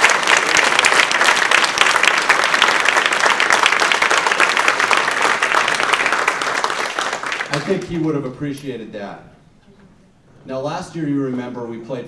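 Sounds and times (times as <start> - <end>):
audience applauding: 0.0 - 8.1.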